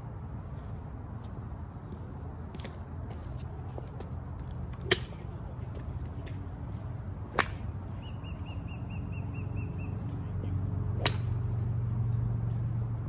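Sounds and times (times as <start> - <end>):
low hum: 0.0 - 13.0
golf club striking ball: 7.3 - 7.7, 11.0 - 11.6
bird chirping: 8.0 - 10.0.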